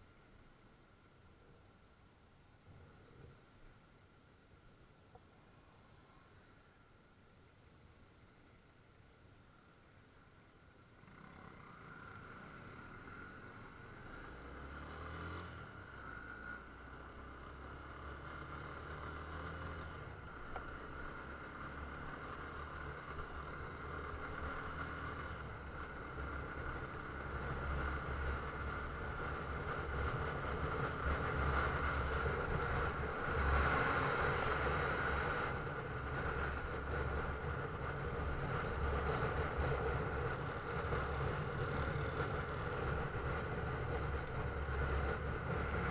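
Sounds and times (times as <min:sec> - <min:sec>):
low engine rumble: 0:19.5 - 0:45.9.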